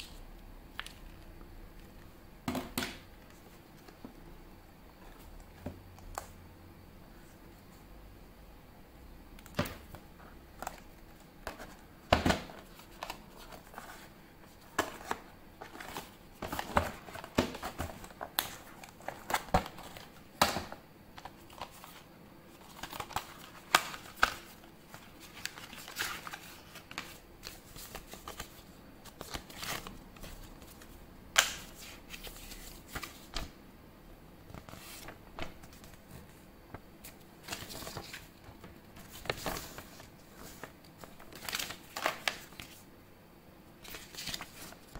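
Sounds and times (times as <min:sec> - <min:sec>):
packaging crinkling and rustling: 0:12.4 - 0:33.5, 0:34.5 - 0:42.8.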